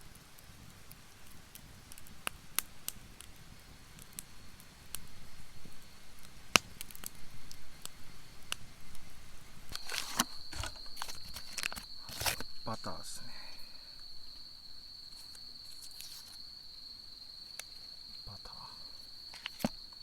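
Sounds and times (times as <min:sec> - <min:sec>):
campfire crackling and popping: 0:00.0 - 0:20.0
insect high-pitched trill: 0:09.7 - 0:20.0.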